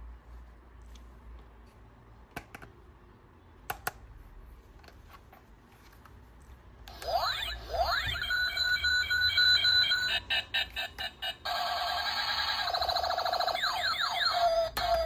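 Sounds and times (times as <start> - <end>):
steady beeping: 7.0 - 15.0.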